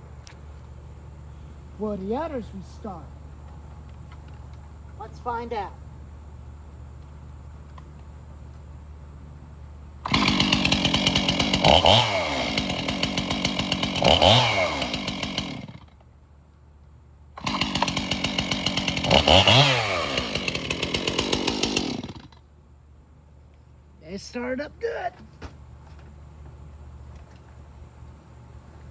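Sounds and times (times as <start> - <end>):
small gas engine revving: 10.0 - 15.8, 17.4 - 22.4.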